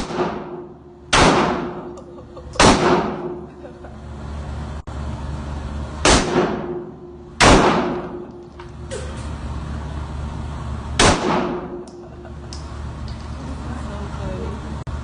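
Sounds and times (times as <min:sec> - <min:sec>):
gunshots with echo: 0:00.0 - 0:01.9, 0:02.6 - 0:03.4, 0:06.0 - 0:08.2, 0:11.0 - 0:11.9
low hum: 0:00.0 - 0:15.0.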